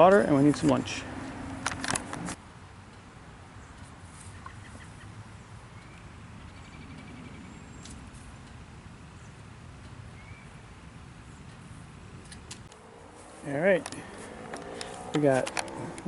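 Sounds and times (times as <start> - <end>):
faint high bird calls: 5.8 - 8.0.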